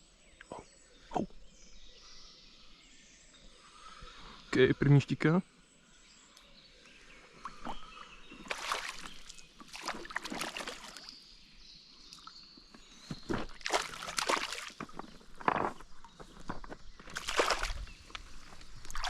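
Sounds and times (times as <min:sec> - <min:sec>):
fish thrashing in water: 0:08.4 - 0:11.2, 0:13.2 - 0:19.0.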